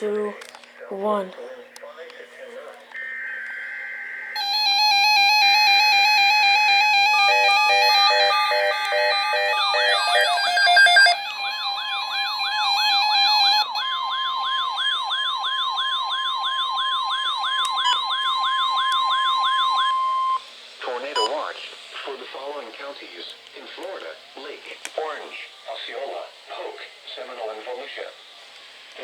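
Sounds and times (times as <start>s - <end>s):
screechy data bursts: 4.4s - 15.1s
electronic alarm tones and beeps: 4.4s - 20.4s
fast warbling siren alert: 4.4s - 20.4s.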